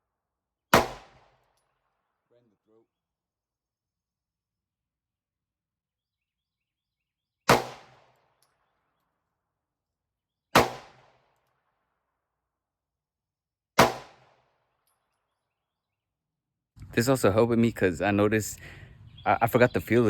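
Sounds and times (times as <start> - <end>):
gunshots with echo: 0.8 - 1.3, 10.6 - 11.2, 13.8 - 14.4.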